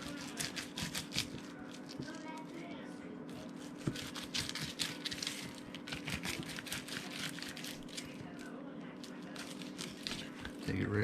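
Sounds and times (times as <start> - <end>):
knife scraping through fish fillet: 0.0 - 1.5, 3.5 - 8.1
steady low hum: 0.0 - 11.0.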